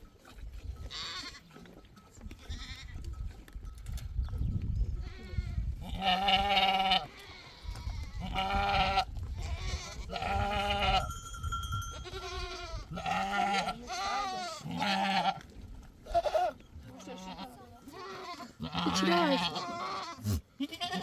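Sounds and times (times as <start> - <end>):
sheep bleating: 0.9 - 1.5, 2.4 - 3.0, 5.0 - 11.1, 12.0 - 15.4, 16.1 - 21.0.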